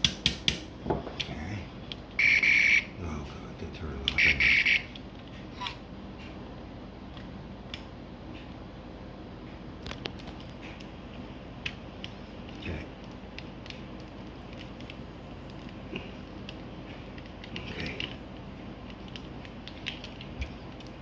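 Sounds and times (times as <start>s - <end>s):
low background noise: 0.0s - 21.0s.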